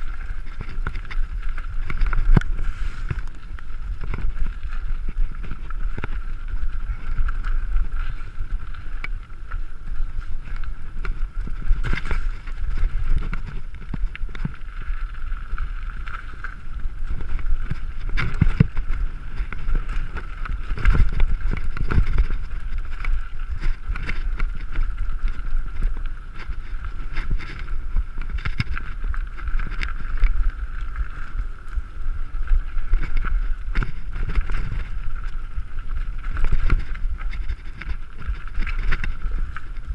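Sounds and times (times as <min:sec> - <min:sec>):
bike knocking and rattling: 0:00.0 - 0:39.9
wind rumble on microphone: 0:00.0 - 0:39.9.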